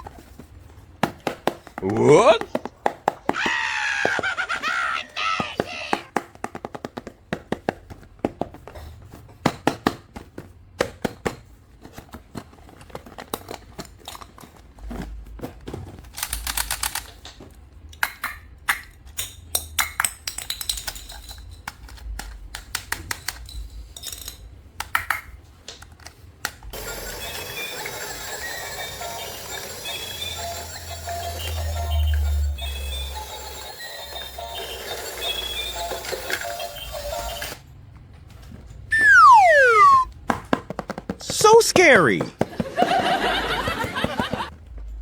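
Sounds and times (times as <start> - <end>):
plastic toys clicking and knocking: 0.0 - 31.0, 33.4 - 37.6.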